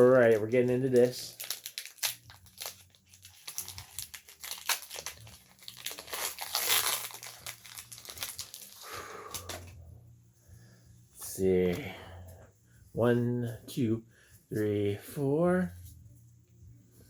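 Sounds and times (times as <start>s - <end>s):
foil wrapper crinkling and tearing: 0.0s - 9.7s.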